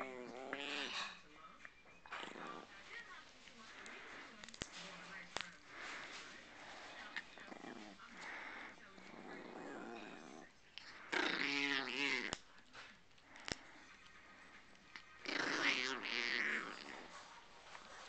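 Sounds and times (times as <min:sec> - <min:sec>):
small dog growling and snarling: 0:00.0 - 0:01.2, 0:02.0 - 0:02.8, 0:05.8 - 0:17.9.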